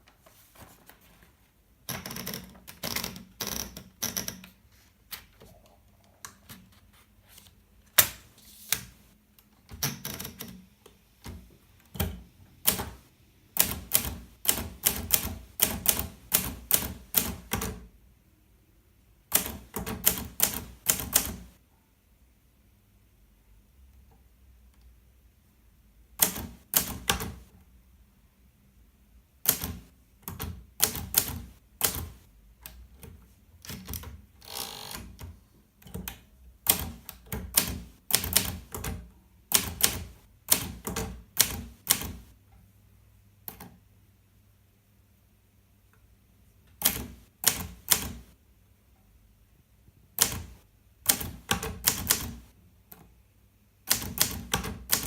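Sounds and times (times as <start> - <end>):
typewriter key strikes: 26.2 - 27.4, 50.2 - 52.4, 53.9 - 55.0.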